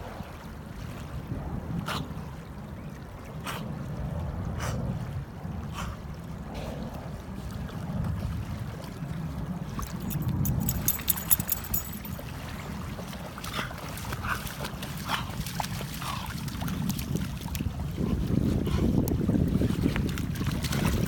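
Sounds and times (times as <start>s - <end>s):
wind rumbling on microphone: 14.2s - 21.0s.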